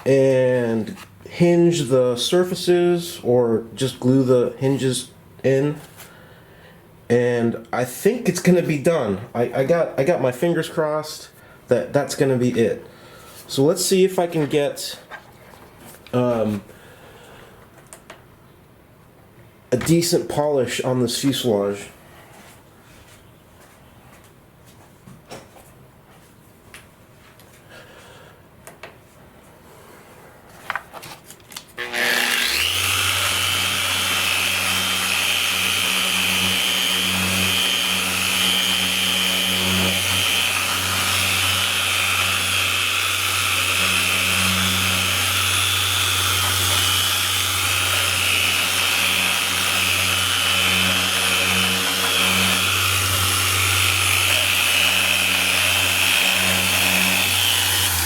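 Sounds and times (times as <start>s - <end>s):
electric polishing tool running: 31.8s - 58.0s.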